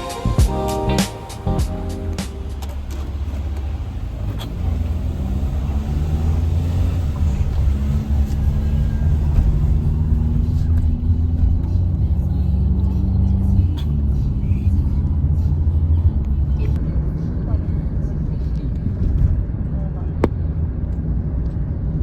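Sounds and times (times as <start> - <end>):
motor vehicle engine rumbling: 0.0 - 21.4.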